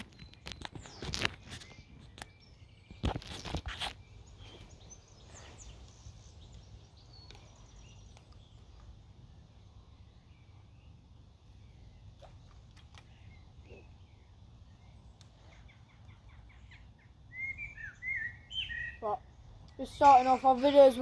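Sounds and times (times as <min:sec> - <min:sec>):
small birds chirping: 0:00.0 - 0:21.0.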